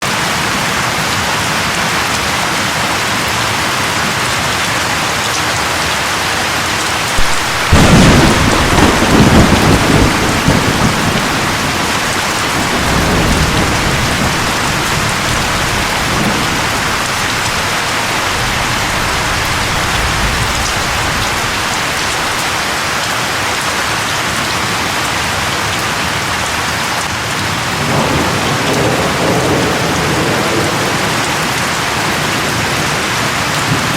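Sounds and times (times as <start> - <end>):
heavy rain pouring: 0.0 - 33.9
thunder rumbling: 7.0 - 22.7, 27.7 - 33.9.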